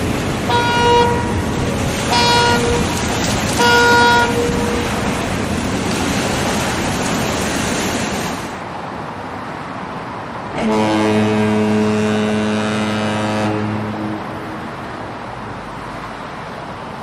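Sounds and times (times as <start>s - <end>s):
steady traffic noise: 0.0s - 17.0s
vehicle horn tooting: 0.5s - 1.4s, 2.1s - 2.8s, 3.6s - 4.8s, 10.6s - 14.2s.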